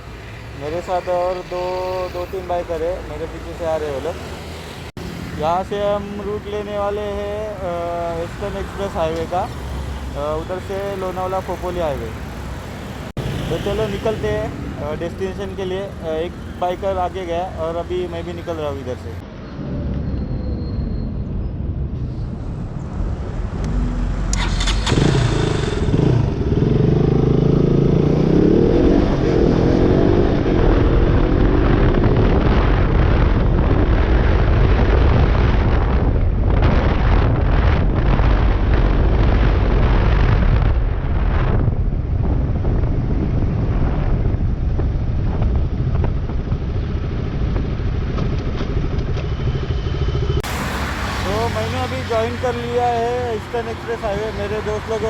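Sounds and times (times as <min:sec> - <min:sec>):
wind rush of riding at speed: 0:00.0 - 0:18.1, 0:19.2 - 0:55.0
motorcycle engine accelerating: 0:23.0 - 0:55.0.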